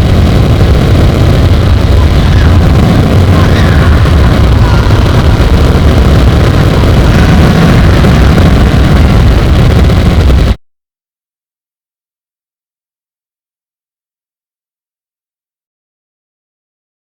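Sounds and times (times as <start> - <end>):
dense low rumble: 0.0 - 10.6
faint wavering voice-like sounds: 1.5 - 8.7.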